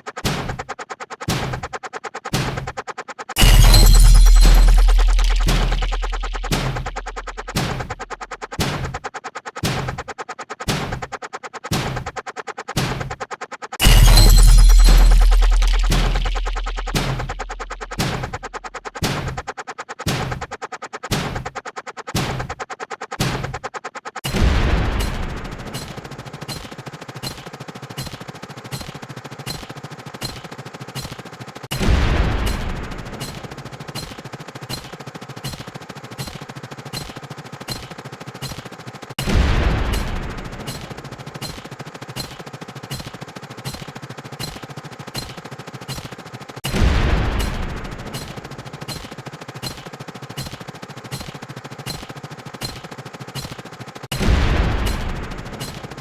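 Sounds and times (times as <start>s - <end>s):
heavy rolling boom: 3.4s - 7.9s, 13.8s - 18.0s, 24.3s - 26.2s, 31.7s - 33.6s, 39.2s - 41.3s, 46.6s - 48.7s, 54.1s - 55.7s
rapid-fire explosion hits: 3.4s - 8.1s, 13.8s - 18.4s, 24.2s - 27.4s, 31.7s - 34.2s, 39.2s - 42.3s, 46.6s - 49.1s, 54.1s - 56.0s.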